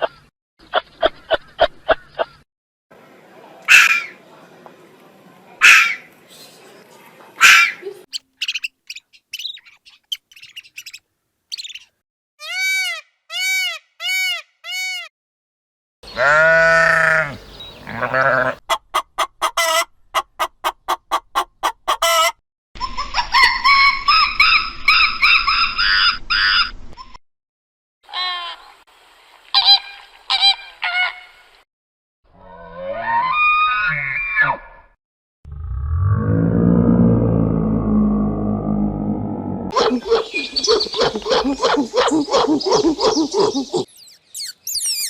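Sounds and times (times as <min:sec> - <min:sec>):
animal calls: 0:39.7 - 0:43.9
dense chattering call: 0:39.7 - 0:43.9.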